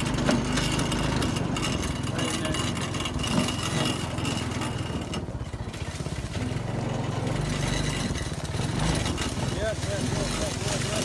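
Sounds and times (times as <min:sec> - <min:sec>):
go-kart engine running: 0:00.0 - 0:11.0.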